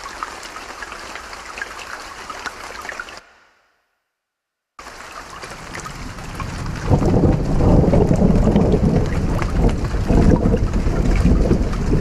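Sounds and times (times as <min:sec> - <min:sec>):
creek water flowing and splashing: 0:00.0 - 0:03.3, 0:04.8 - 0:12.0
deep low rumble: 0:06.7 - 0:12.0.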